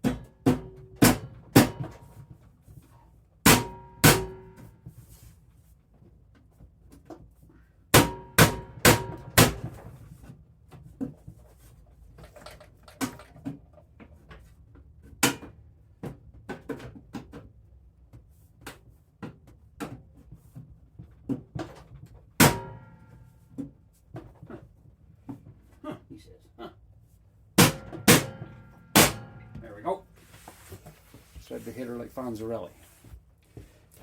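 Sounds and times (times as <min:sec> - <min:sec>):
ringing sheet metal clangs: 0:22.4 - 0:23.2, 0:27.6 - 0:29.7.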